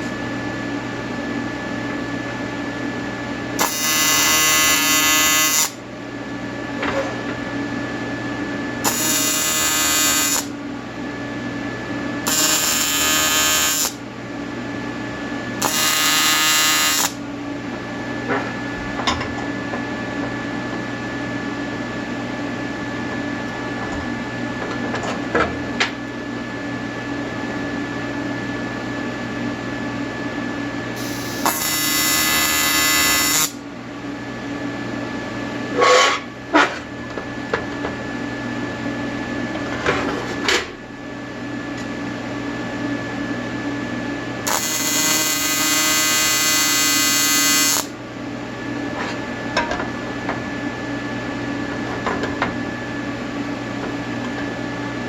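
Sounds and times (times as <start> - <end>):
machine hum: 0.0 - 21.6, 29.2 - 38.6, 40.8 - 54.7
welding arc buzzing: 3.6 - 5.8, 8.8 - 10.6, 12.2 - 14.0, 15.6 - 17.2, 31.0 - 33.6, 44.4 - 48.0.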